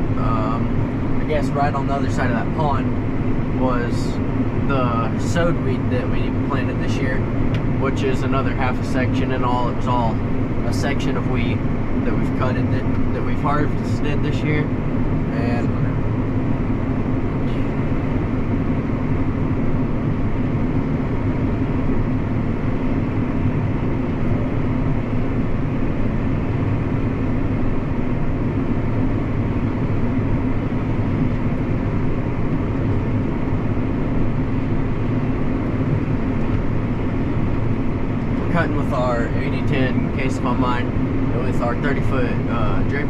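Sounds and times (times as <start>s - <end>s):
tractor engine droning: 0.0s - 43.0s.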